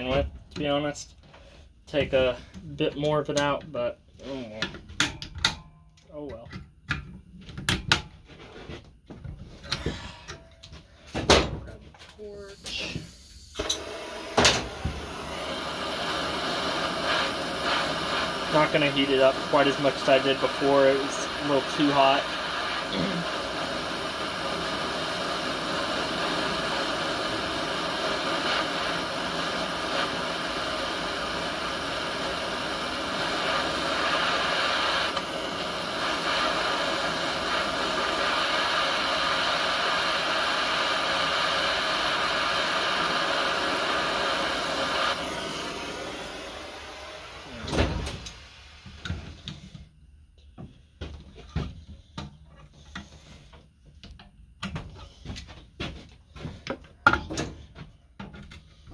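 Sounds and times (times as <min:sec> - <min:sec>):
torch flame hissing: 0:09.6 - 0:10.4, 0:12.2 - 0:49.7.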